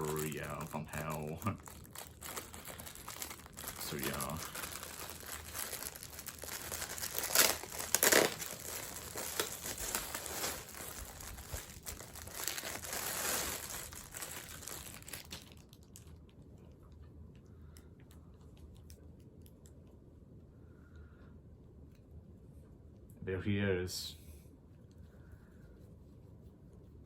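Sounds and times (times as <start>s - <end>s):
packaging crinkling: 0.0s - 16.4s.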